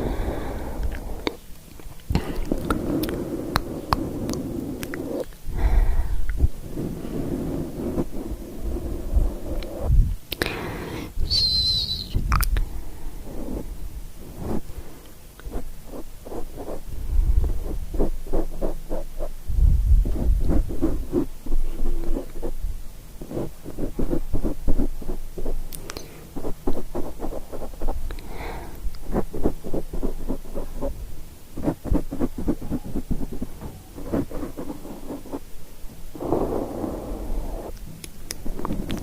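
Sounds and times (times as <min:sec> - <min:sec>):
scratchy rubbing on microphone: 0:02.2 - 0:05.4, 0:06.4 - 0:10.2, 0:13.2 - 0:31.0, 0:31.6 - 0:35.6, 0:36.2 - 0:37.8, 0:38.4 - 0:39.0.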